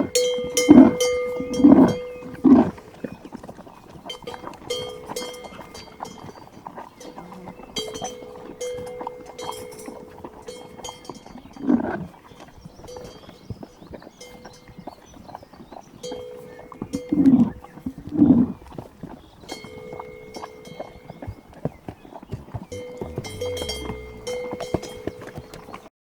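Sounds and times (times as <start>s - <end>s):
livestock bells clinking: 0.0s - 2.7s, 4.0s - 14.9s, 16.0s - 17.5s, 19.5s - 21.3s, 22.6s - 25.9s
animal call: 22.7s - 25.8s.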